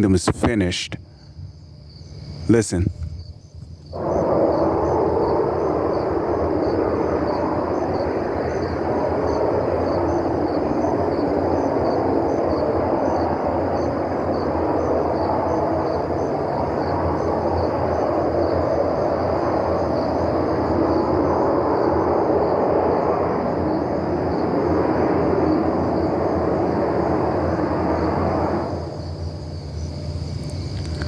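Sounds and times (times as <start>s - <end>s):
deep rumbling roar: 4.0s - 13.3s.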